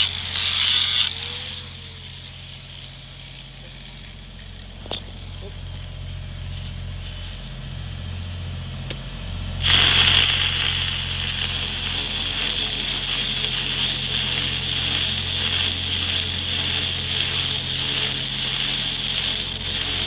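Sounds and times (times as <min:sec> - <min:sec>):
welding arc crackling: 0:00.0 - 0:20.0
welding machine humming: 0:00.0 - 0:20.0.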